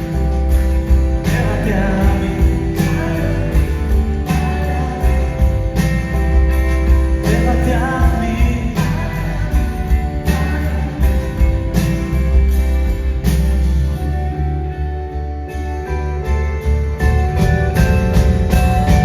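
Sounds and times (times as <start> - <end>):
rock band playing live: 0.0 - 19.0.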